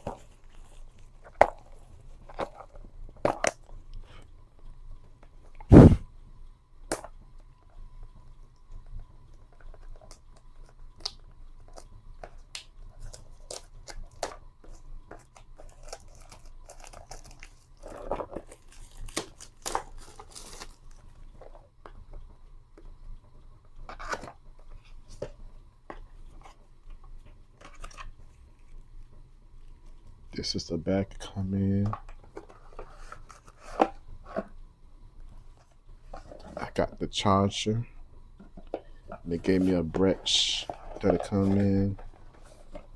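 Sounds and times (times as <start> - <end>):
packaging clicks and crinkles: 11.0 - 21.0.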